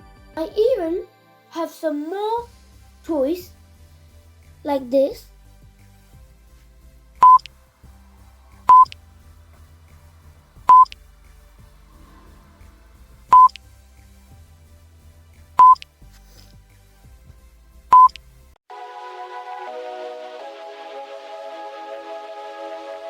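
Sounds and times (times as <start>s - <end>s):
faint low background music: 0.0s - 23.0s
short electronic beeps: 7.2s - 7.5s, 8.7s - 9.0s, 10.7s - 11.0s, 13.3s - 13.6s, 15.6s - 15.8s, 17.9s - 18.2s.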